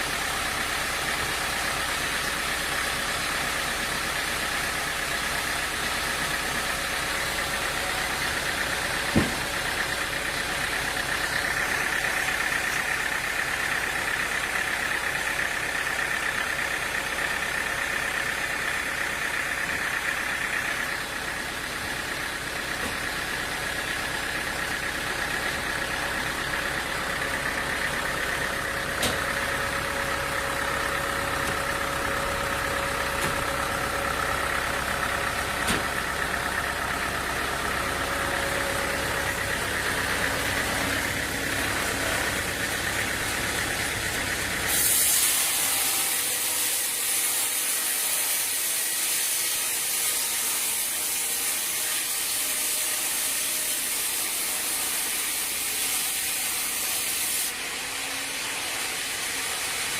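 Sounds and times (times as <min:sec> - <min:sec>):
engine running: 0:00.0 - 0:59.9
loud high hiss: 0:44.6 - 0:45.8.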